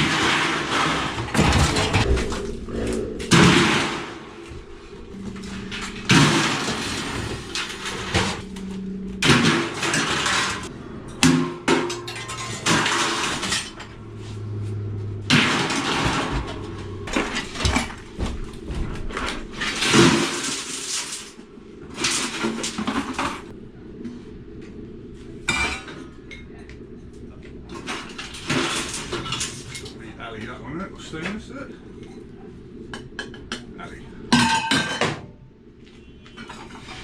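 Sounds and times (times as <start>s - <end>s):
scrap metal clanking onto pile: 0.0s - 2.4s, 5.2s - 23.5s, 27.7s - 30.0s, 36.3s - 37.0s.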